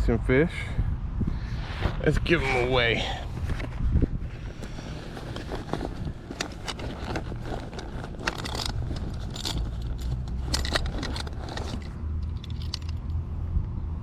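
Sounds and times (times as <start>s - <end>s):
rattling and clicking handling noise: 3.3s - 13.2s.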